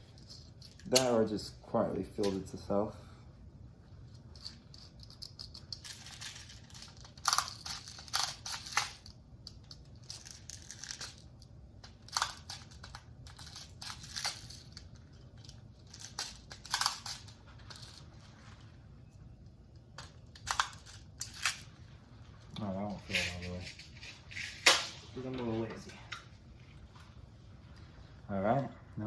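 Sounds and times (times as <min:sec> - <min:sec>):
pistol handling rustles and clicks: 0:04.0 - 0:18.2.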